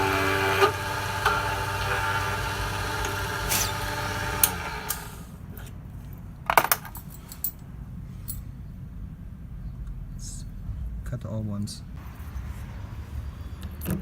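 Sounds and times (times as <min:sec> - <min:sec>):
key-cutting machine motor humming: 0:00.0 - 0:05.3
metallic clinks of keys: 0:06.6 - 0:07.6.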